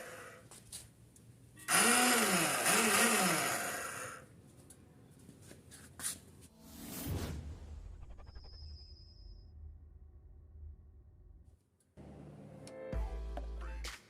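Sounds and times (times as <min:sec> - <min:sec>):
motorcycle starter whirring and grinding: 0:00.0 - 0:00.5, 0:01.7 - 0:04.3.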